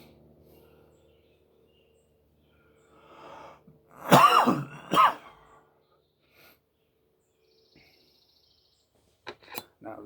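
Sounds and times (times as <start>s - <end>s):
man coughing: 4.0s - 5.4s.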